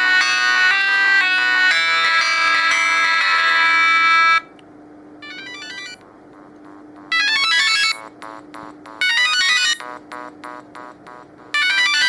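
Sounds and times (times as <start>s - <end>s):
sustained synth chord ringtone: 0.0s - 4.5s, 5.2s - 6.0s, 6.7s - 12.0s
quick electronic ringtone notes: 5.2s - 6.0s, 7.0s - 12.0s.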